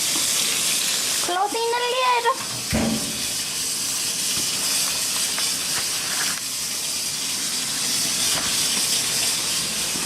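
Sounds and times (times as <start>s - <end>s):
water running into washing machine: 0.0s - 10.0s.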